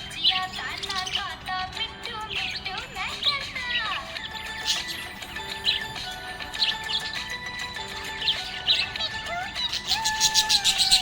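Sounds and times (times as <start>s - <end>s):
budgerigar chirping and warbling: 0.0s - 11.0s.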